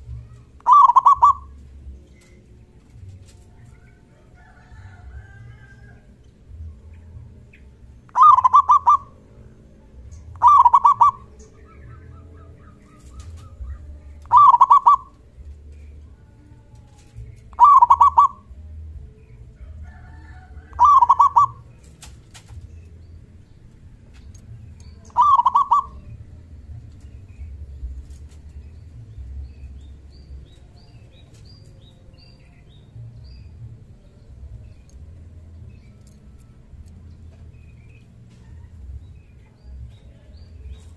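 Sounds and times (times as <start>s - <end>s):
dove trilled call: 0.0s - 1.7s, 8.1s - 9.2s, 10.2s - 15.3s, 17.0s - 18.6s, 20.1s - 22.6s, 24.9s - 26.3s.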